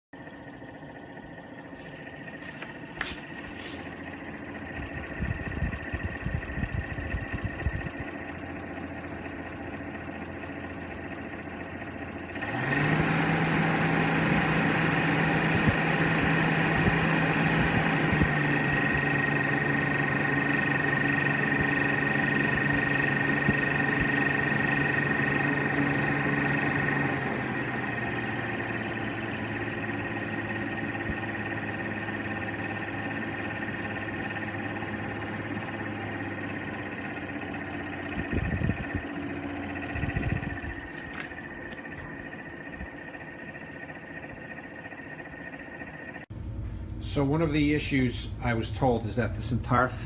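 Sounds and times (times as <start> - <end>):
humidifier fan humming: 0.2 - 50.0.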